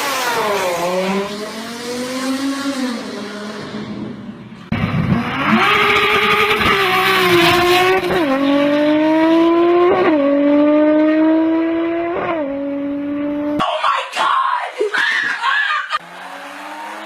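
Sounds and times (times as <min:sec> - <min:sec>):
car engine accelerating hard: 0:00.0 - 0:13.6, 0:16.0 - 0:17.0.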